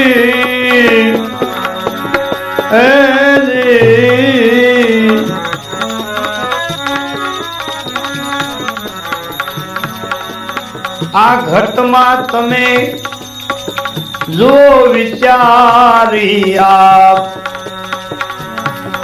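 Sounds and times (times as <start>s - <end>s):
gliding melodic line: 0.0s - 19.0s
held drone tones: 0.0s - 19.0s
tabla rhythm: 0.0s - 19.0s.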